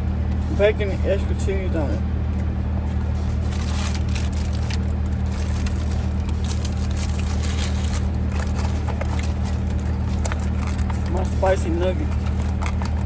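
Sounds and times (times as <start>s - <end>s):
car idling hum: 0.0s - 13.0s
packaging rustling and clicking: 3.0s - 13.0s.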